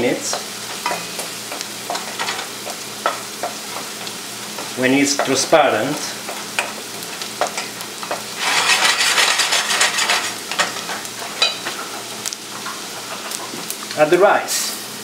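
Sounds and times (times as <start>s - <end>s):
onion sizzling in a pan: 0.0s - 15.0s
utensil clicking against pan: 0.3s - 5.4s.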